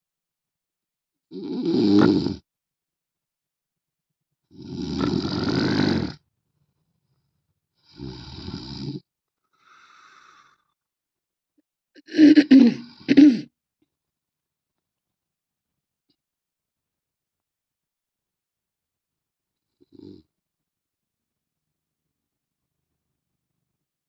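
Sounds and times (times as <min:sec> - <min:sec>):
man snoring: 0:01.3 - 0:02.4, 0:04.5 - 0:06.2, 0:07.8 - 0:09.0, 0:19.8 - 0:20.3.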